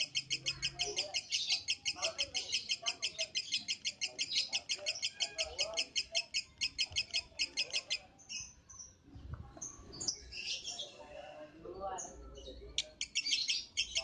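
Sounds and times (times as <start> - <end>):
lovebird chirping: 0.0 - 9.0, 12.0 - 14.0.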